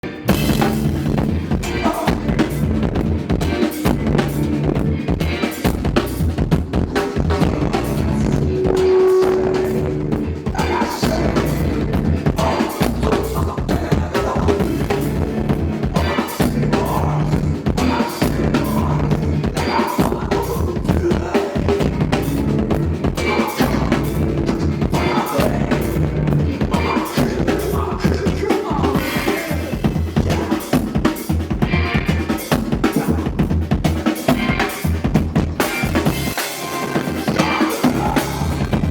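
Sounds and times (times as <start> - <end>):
band music: 0.0 - 38.9
bass drum and snare hits: 0.3 - 19.4.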